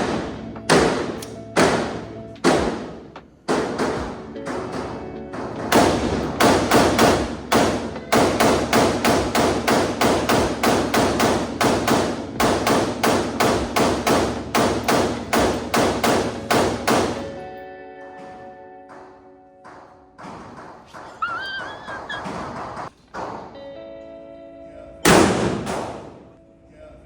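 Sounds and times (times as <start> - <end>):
rapid gunshots: 0.0 - 17.4
faint music: 0.0 - 27.0.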